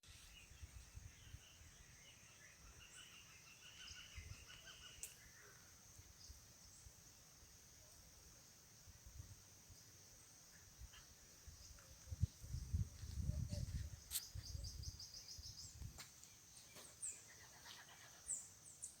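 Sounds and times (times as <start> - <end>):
birds chirping: 0.2 - 6.9
wind or handling thumps: 11.7 - 14.7.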